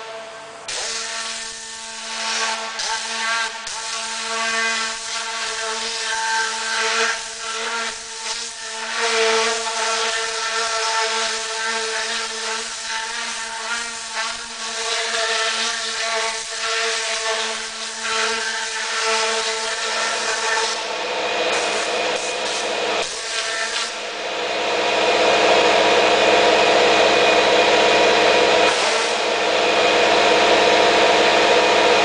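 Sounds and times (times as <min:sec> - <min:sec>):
compressed air gun hissing: 0:09.4 - 0:24.1, 0:28.6 - 0:29.6.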